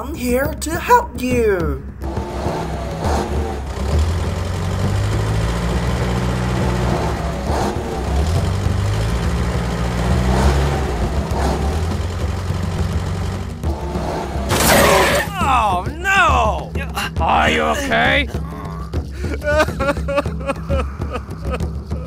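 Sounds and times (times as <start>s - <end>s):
toy truck engine revving: 2.0s - 15.3s.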